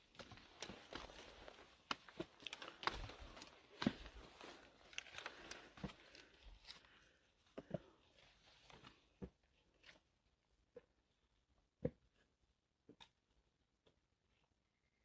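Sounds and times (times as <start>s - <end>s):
faint footsteps and scuffs: 0.0s - 6.8s.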